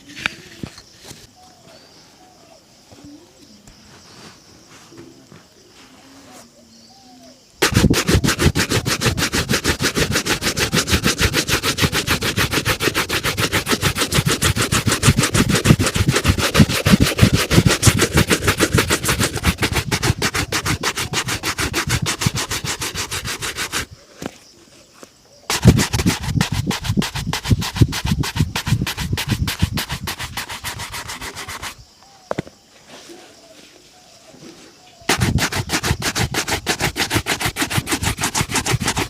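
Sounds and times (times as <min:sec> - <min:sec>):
shoe buffing rubbing strokes: 0:07.6 - 0:24.3, 0:25.5 - 0:31.8, 0:35.1 - 0:39.0.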